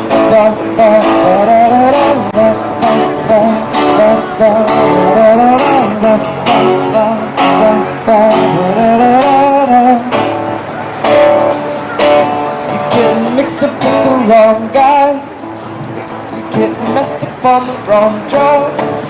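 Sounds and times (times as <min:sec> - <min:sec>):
strummed acoustic guitar: 0:00.0 - 0:19.0
wavering melody line: 0:01.0 - 0:06.7.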